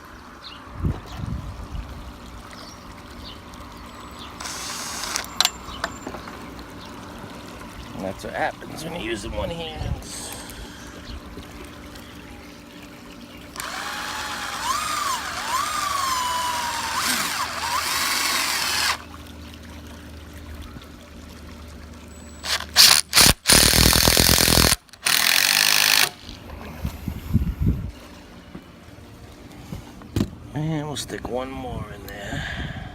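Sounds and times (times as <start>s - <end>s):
short bursts of harsh noise: 4.4s - 5.4s, 22.4s - 26.2s
power drill motor whine: 4.4s - 5.5s, 13.6s - 19.0s, 22.4s - 26.2s.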